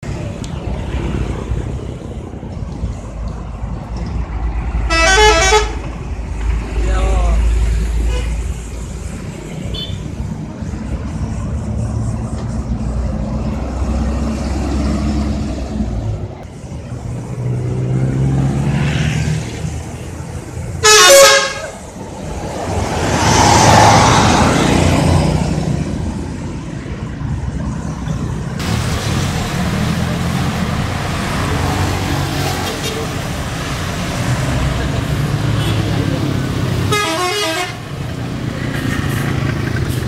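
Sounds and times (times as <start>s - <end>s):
bus rushing by: 0.0s - 40.0s
bus traffic rumbling: 0.0s - 40.0s
multi-tone bus horn blast: 4.9s - 5.8s, 20.8s - 21.8s, 35.5s - 36.2s, 36.8s - 37.9s.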